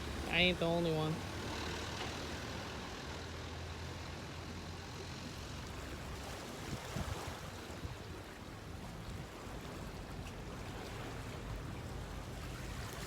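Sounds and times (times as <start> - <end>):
wind noise: 6.6 - 8.2.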